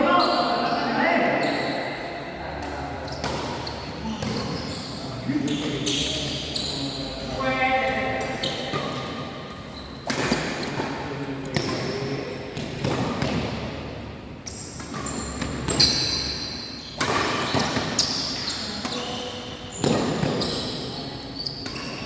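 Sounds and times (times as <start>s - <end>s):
shoes squeaking: 3.0s - 12.1s, 14.4s - 22.0s.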